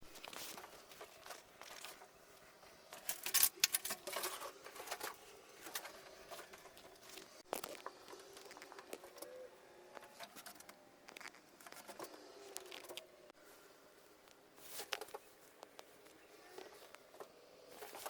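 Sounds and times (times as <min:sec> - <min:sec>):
rustling and tearing materials: 0:00.0 - 0:13.3
sharp clicks and scrapes: 0:00.1 - 0:13.1, 0:14.3 - 0:18.0.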